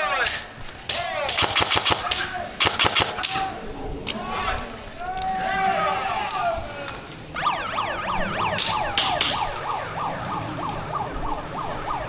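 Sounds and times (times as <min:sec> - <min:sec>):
sharp clicks: 0:00.1 - 0:04.2
electronic siren yelping: 0:07.4 - 0:12.0.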